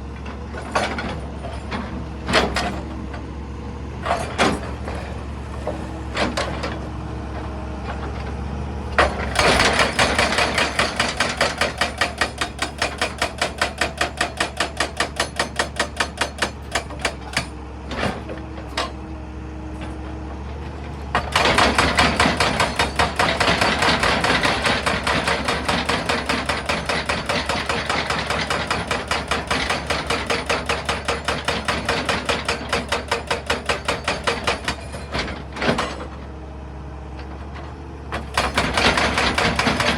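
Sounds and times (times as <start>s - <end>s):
hydraulic breaker hammering stone: 9.0s - 17.6s, 21.2s - 36.1s, 38.2s - 39.9s.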